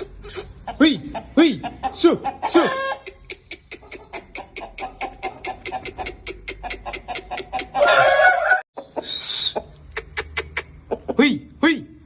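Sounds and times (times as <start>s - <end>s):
chicken harsh call: 0.0s - 11.1s
chicken clicking: 3.0s - 8.0s, 9.0s - 11.2s.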